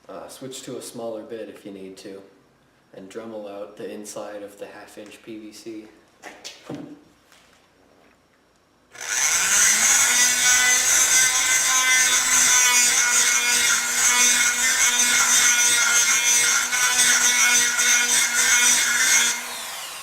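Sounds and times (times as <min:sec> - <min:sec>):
rotary tool sanding pipe: 0:09.0 - 0:20.0.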